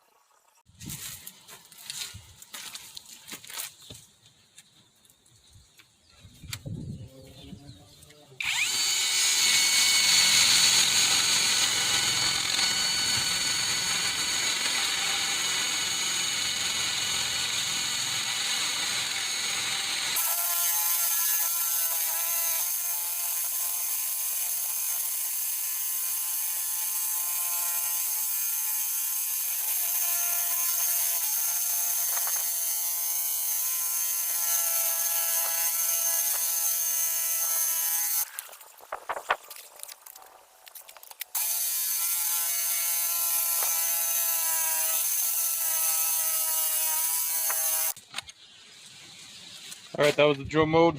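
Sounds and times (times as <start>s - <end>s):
rotary hammer motor whine: 8.4s - 20.3s.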